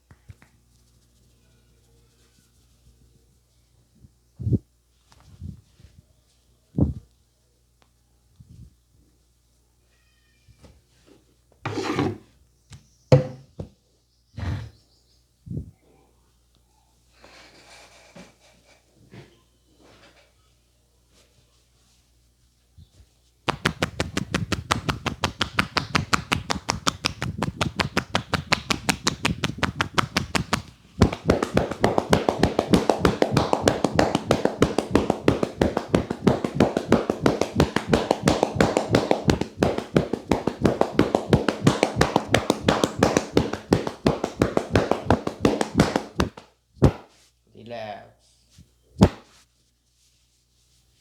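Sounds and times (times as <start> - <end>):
hands slapping head rhythmically: 23.5 - 47.2, 49.0 - 49.3.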